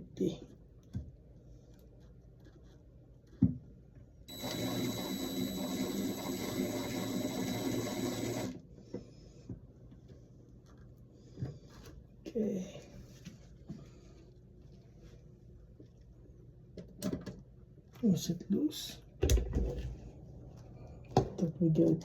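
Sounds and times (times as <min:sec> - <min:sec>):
small electric motor running: 0:04.3 - 0:08.6.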